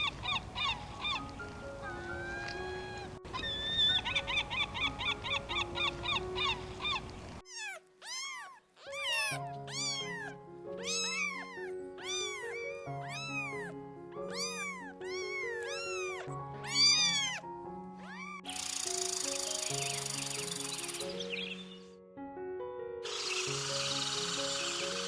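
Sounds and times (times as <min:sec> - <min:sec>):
background music: 0:00.0 - 0:25.0
animal high-pitched calls: 0:01.8 - 0:20.6.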